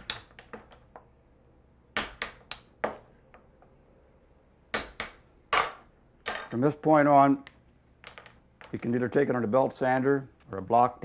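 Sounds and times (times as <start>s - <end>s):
hammer striking metal blade: 4.8s - 6.5s.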